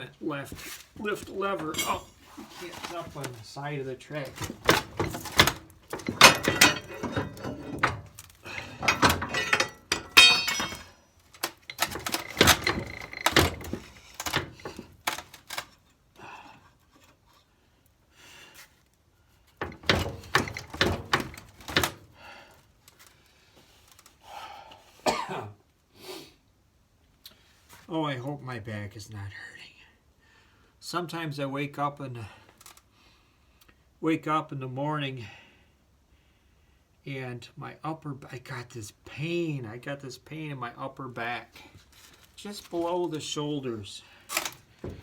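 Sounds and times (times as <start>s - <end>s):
metal parts clanking: 1.3s - 3.4s, 4.1s - 15.8s, 19.6s - 22.0s, 44.3s - 45.0s.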